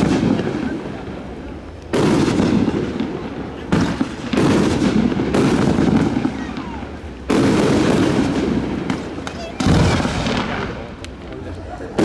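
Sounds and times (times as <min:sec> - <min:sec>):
rumbling crackling firework tails: 0:00.0 - 0:12.0
firework shells bursting: 0:01.9 - 0:11.3.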